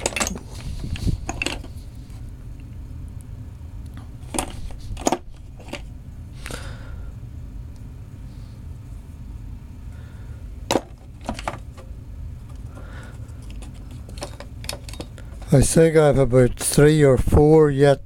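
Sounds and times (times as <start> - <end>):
metal tools clicking and knocking: 0.0 - 0.6, 1.2 - 1.7, 13.4 - 15.6
steady low hum: 0.0 - 18.0.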